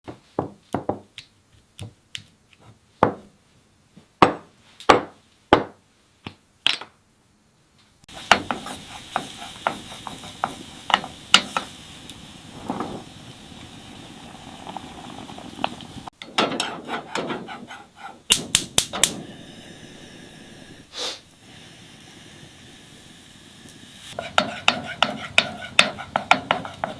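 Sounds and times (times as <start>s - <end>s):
steady hiss: 7.5s - 26.9s.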